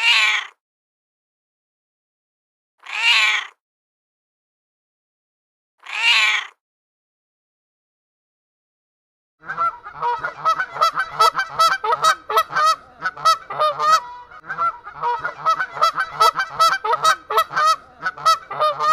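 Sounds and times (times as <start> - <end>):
flock of birds calling: 9.5 - 18.9.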